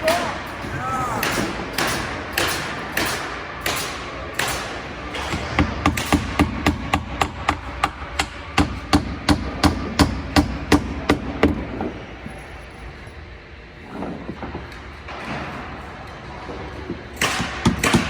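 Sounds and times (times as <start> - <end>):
hammer striking nails into wood: 1.2 - 11.6, 17.2 - 18.0.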